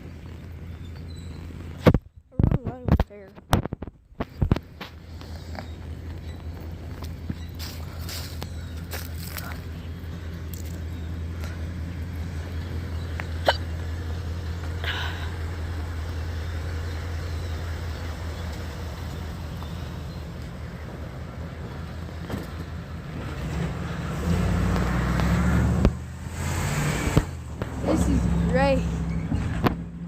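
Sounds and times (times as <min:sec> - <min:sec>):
vehicle engine idling: 0:00.0 - 0:30.0.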